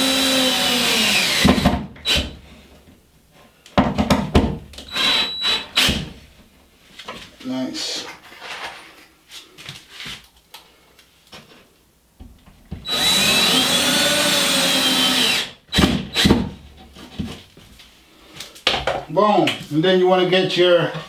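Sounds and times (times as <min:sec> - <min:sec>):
power drill driving a screw: 0:00.0 - 0:02.4, 0:04.9 - 0:06.0, 0:12.8 - 0:16.4.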